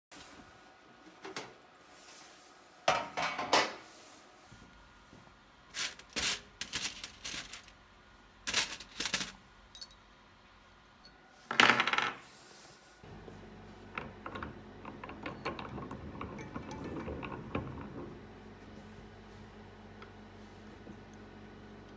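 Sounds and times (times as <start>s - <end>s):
silver pieces clinking: 5.8s - 7.7s, 8.5s - 10.2s.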